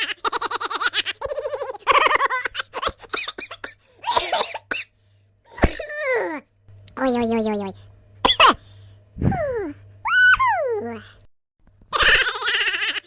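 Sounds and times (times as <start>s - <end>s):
cartoonish laughing effects: 0.0s - 4.4s, 9.4s - 11.0s, 11.9s - 13.0s.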